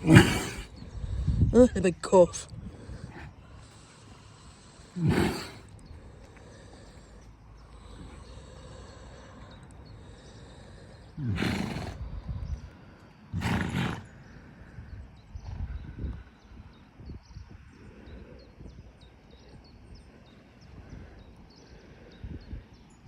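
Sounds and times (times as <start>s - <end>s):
horse snorting breath blasts: 0.0s - 0.9s, 2.6s - 5.8s, 10.1s - 12.2s, 13.3s - 14.3s
low breath bursts: 2.5s - 19.0s.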